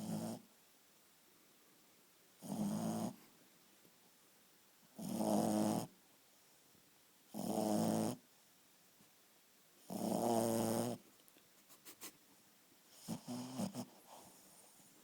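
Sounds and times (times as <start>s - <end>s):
dog snoring: 0.0s - 0.5s, 2.4s - 3.3s, 5.0s - 5.9s, 7.3s - 8.2s, 9.8s - 11.0s, 12.9s - 14.9s.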